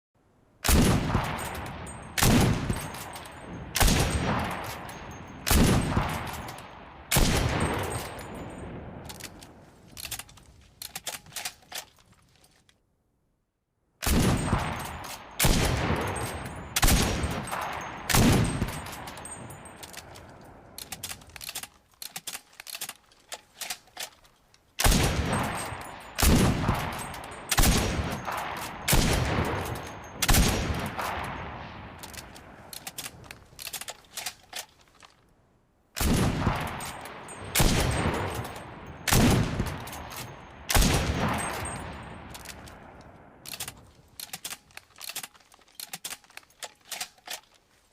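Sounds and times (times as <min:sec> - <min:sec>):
rifle shots echoing: 0:00.6 - 0:10.3, 0:14.0 - 0:21.7, 0:24.8 - 0:34.3, 0:36.0 - 0:45.2
metallic clicks: 0:01.1 - 0:06.8, 0:07.5 - 0:12.8, 0:14.4 - 0:35.3, 0:36.4 - 0:47.7.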